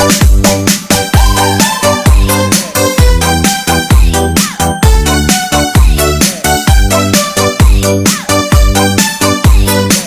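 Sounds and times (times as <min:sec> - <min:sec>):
electronic dance music: 0:00.0 - 0:10.0.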